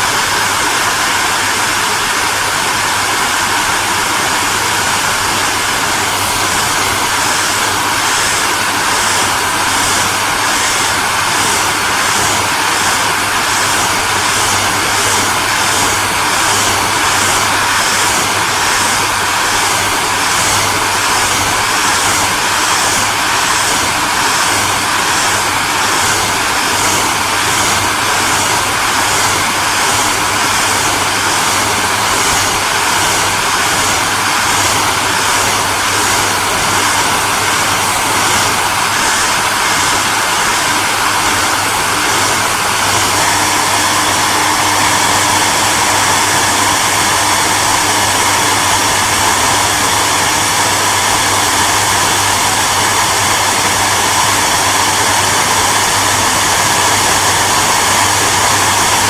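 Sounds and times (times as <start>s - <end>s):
hairdryer blowing air: 0.0s - 59.0s.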